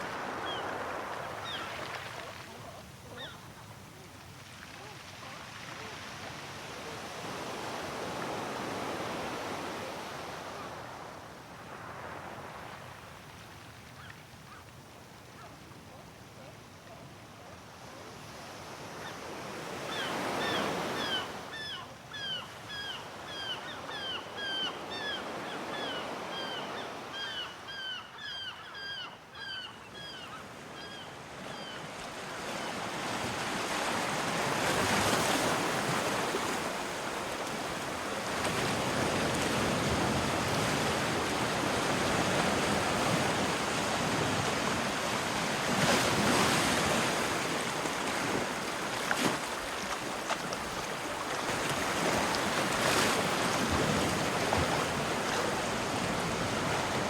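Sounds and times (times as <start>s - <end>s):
sea waves washing in: 0.0s - 13.8s, 32.0s - 57.0s
gull calling: 3.1s - 3.6s.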